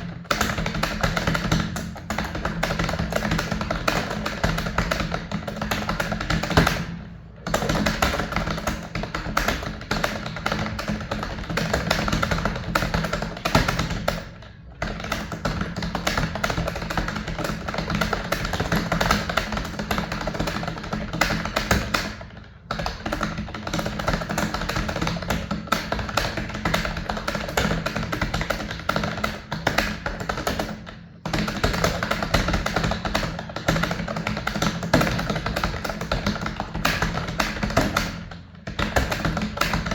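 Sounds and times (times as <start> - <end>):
music with percussive tapping: 0.0 - 39.9.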